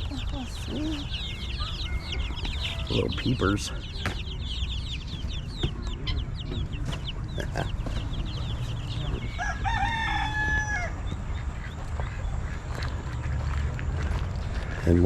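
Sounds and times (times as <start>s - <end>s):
baby chicks peeping: 0.0s - 15.0s
rooster crowing: 1.2s - 3.3s, 8.8s - 11.2s.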